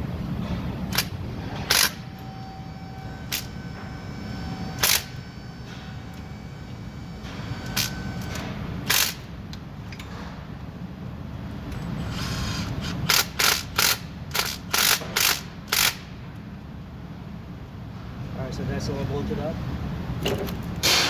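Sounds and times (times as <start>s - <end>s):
ratchet wrench clicking: 4.8s - 5.2s, 7.7s - 9.3s, 12.1s - 16.1s.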